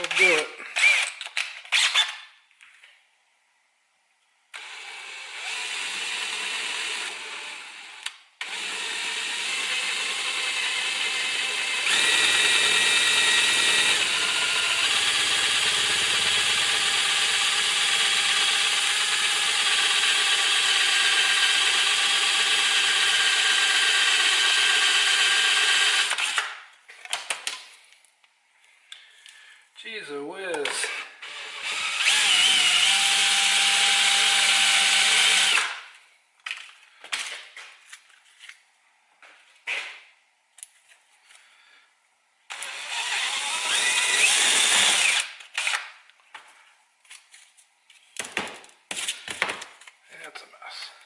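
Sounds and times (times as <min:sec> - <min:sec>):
electric drill boring: 0:00.0 - 0:02.2, 0:04.5 - 0:26.5, 0:30.9 - 0:35.8, 0:42.5 - 0:45.8.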